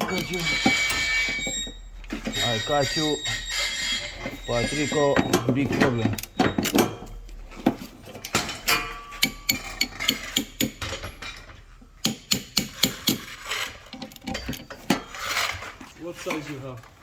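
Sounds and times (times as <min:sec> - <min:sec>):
metal tools clinking together: 0:00.0 - 0:07.4, 0:12.8 - 0:16.7.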